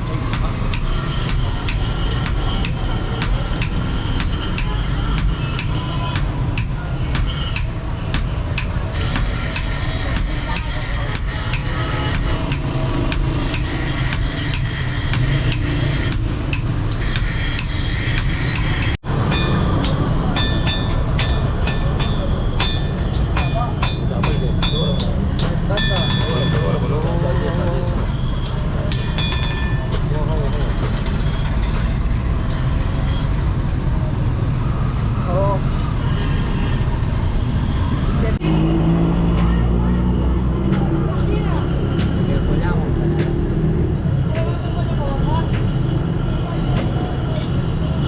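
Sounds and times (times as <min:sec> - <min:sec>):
hammer ringing on anvil: 0:00.3 - 0:27.1.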